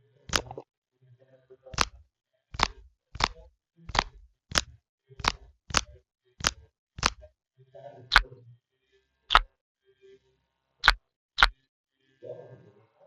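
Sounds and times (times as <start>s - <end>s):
sharp pops or clicks: 0.3s - 0.6s, 1.8s - 2.0s, 2.6s - 7.3s, 10.8s - 11.6s.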